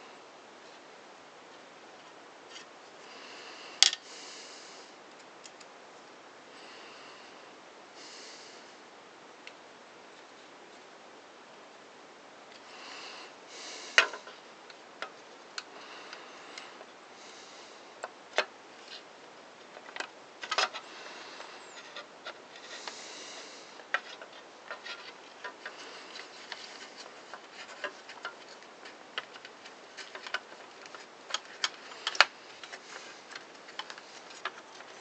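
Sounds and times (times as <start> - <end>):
plastic and metal parts clicking: 23.9 - 35.0.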